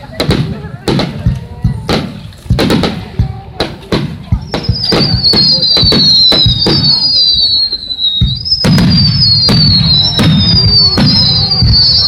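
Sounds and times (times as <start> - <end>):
fireworks bursting with sharp bangs: 0.0 - 12.0
high whistling sliding downward: 4.6 - 12.0.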